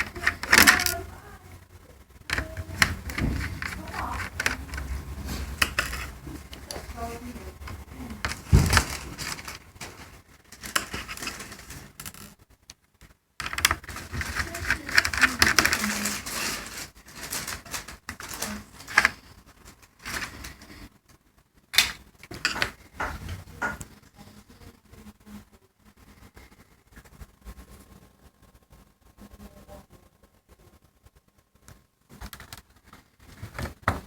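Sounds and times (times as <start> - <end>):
plastic laptop parts clicking: 0.0 - 1.1, 2.3 - 7.0, 7.6 - 12.3, 13.4 - 19.4, 20.0 - 20.8, 21.8 - 22.8.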